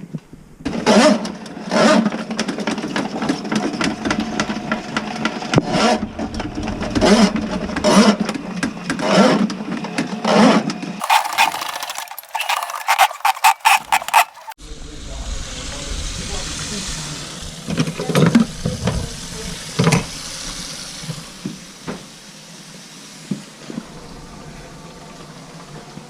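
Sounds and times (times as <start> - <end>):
small motor running: 11.0 - 14.6.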